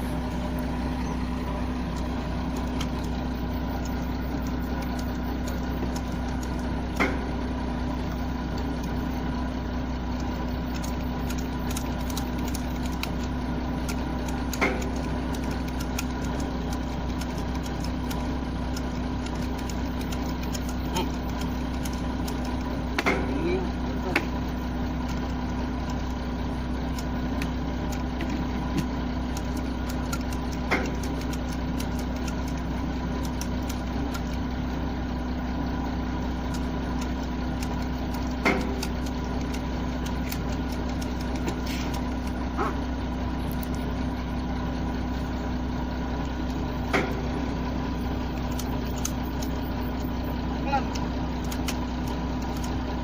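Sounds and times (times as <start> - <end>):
excavator diesel engine idling: 0.0 - 53.0.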